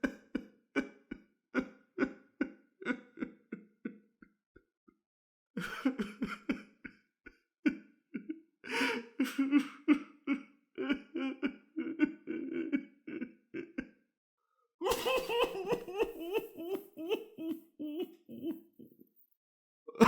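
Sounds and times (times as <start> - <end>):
man sobbing: 5.6 - 7.0, 7.6 - 13.9, 14.8 - 19.0.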